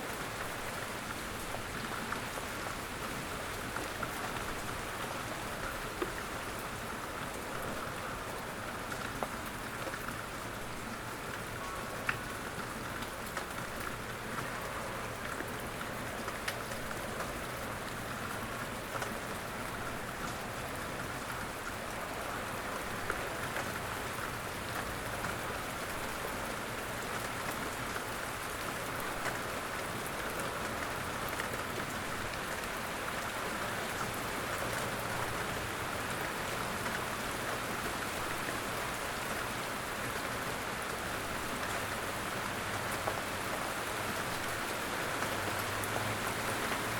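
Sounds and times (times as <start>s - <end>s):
rain pattering on a surface: 0.0s - 46.9s.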